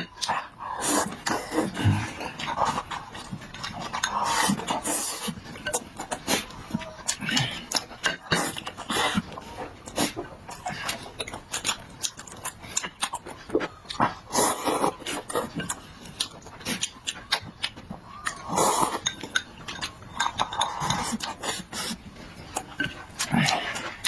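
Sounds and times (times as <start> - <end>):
wet chewing and lip-smacking: 0.0 - 24.0
utensils clinking on dishes: 18.2 - 21.8.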